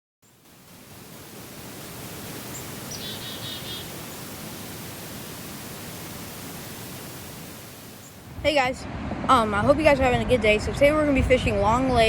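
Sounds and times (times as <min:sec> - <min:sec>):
outdoor background hiss: 0:00.2 - 0:12.0
bird trill: 0:02.3 - 0:04.1.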